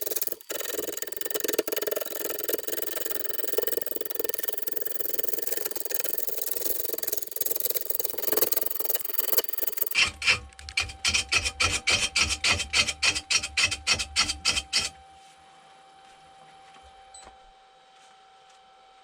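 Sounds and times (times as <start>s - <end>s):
lathe motor hum: 0.0s - 15.0s
lathe gouge striking wood: 9.8s - 14.9s.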